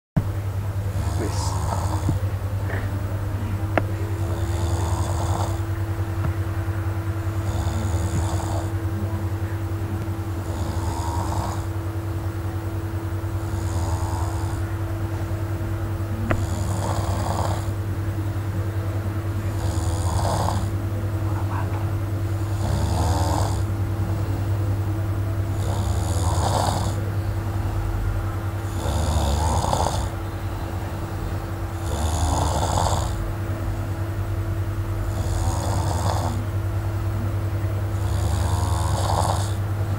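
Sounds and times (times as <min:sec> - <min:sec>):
steady low hum: 0:00.2 - 0:39.9
man snoring: 0:00.9 - 0:06.2, 0:07.2 - 0:11.9, 0:13.2 - 0:15.0, 0:15.9 - 0:17.8, 0:19.4 - 0:21.1, 0:22.2 - 0:24.6, 0:25.4 - 0:27.9, 0:28.5 - 0:30.3, 0:31.0 - 0:33.4, 0:34.9 - 0:36.5, 0:37.3 - 0:39.6.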